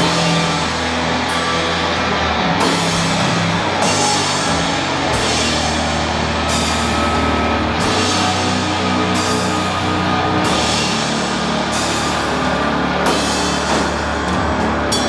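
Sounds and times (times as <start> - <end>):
bass holding low notes: 0.0 - 15.0
distorted guitars: 0.0 - 15.0.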